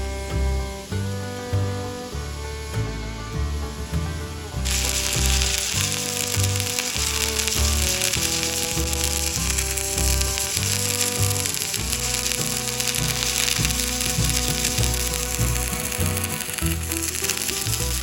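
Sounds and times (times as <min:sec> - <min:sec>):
welding arc crackling: 0:04.7 - 0:18.0.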